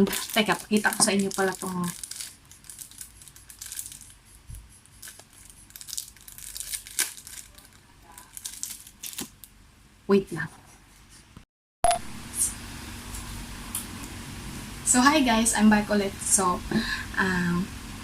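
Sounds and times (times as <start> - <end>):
packaging crinkling and rustling: 0.0 - 4.2, 4.8 - 9.5.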